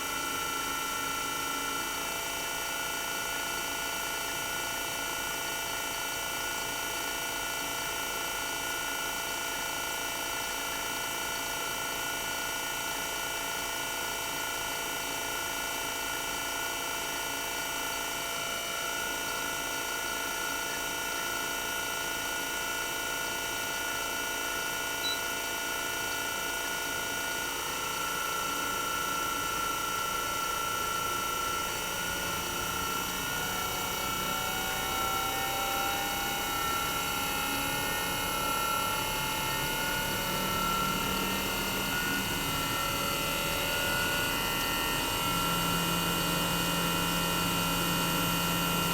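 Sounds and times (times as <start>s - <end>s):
compressor whine: 0.0s - 48.9s.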